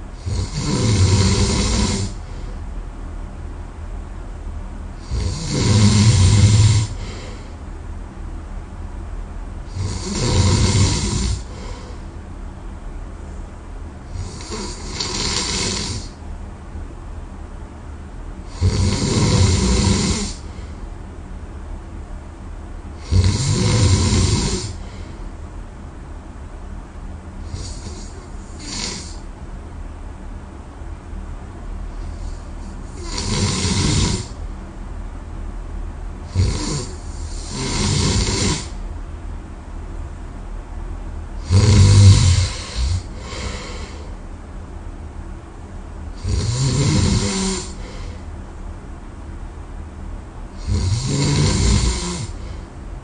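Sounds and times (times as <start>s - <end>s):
quiet breathing: 0.0s - 2.8s, 5.0s - 7.7s, 9.7s - 12.2s, 18.4s - 20.9s, 23.0s - 25.4s, 31.9s - 34.5s, 36.5s - 38.8s, 41.8s - 44.3s, 46.2s - 48.5s, 50.6s - 52.9s
person snoring: 0.2s - 2.3s, 5.0s - 7.5s, 9.7s - 12.0s, 14.1s - 16.2s, 18.5s - 20.5s, 23.0s - 25.0s, 27.4s - 29.2s, 32.1s - 34.4s, 36.3s - 38.8s, 41.4s - 44.2s, 46.2s - 48.2s, 50.6s - 52.7s.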